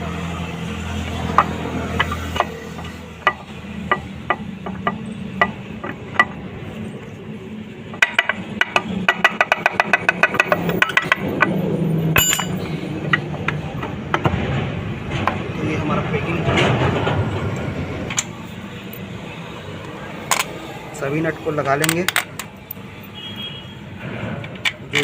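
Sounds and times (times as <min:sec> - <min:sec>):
metal tools clicking: 0:12.2 - 0:12.8
sharp ringing metal clink: 0:12.2 - 0:12.8.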